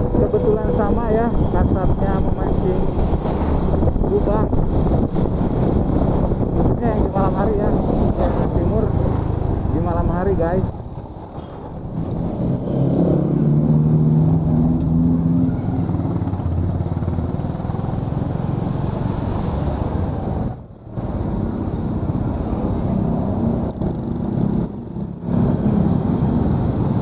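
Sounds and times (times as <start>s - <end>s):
road and wind noise: 0.0s - 27.0s
motorcycle engine running: 20.2s - 27.0s.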